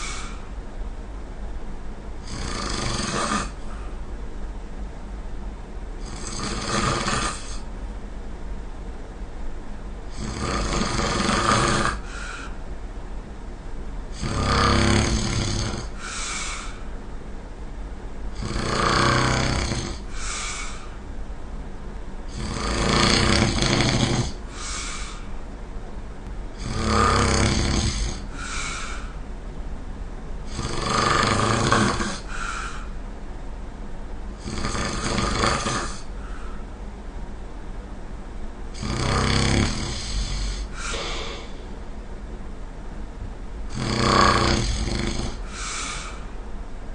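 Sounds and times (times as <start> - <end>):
person snoring loudly: 0.0 - 0.5, 2.2 - 3.6, 6.0 - 7.6, 10.1 - 12.5, 14.1 - 16.8, 18.4 - 20.9, 22.3 - 25.3, 26.6 - 29.2, 30.5 - 32.9, 34.4 - 36.6, 38.8 - 41.6, 43.7 - 46.3.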